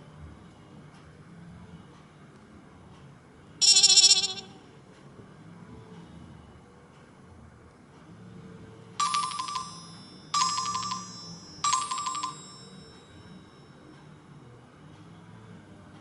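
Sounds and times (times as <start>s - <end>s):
electronic ringtone chime: 3.6s - 4.6s, 9.0s - 13.4s.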